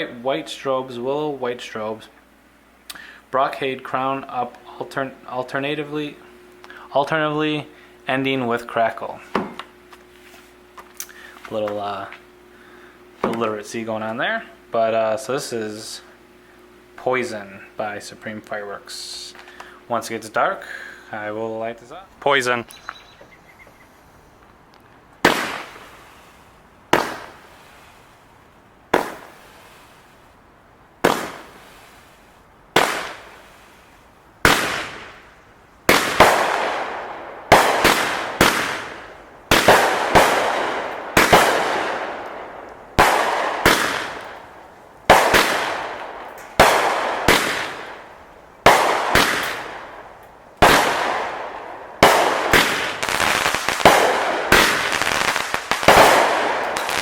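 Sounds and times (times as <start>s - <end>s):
firework bangs: 25.2s - 30.2s, 31.0s - 57.0s
firework hiss: 25.2s - 57.0s.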